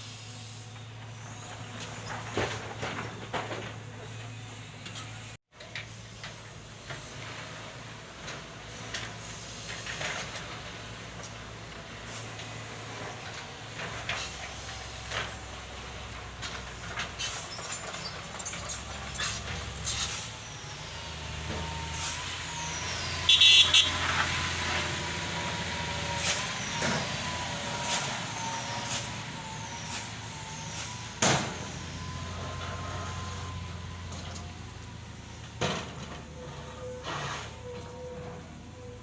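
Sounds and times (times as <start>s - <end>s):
diesel machinery running: 0.0s - 39.0s
knocks and clanks: 1.6s - 4.2s.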